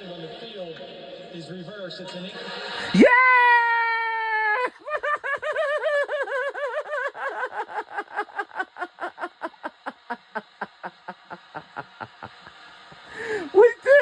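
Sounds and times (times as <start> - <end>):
person laughing excitedly: 2.8 - 14.0
person panting: 12.4 - 13.6.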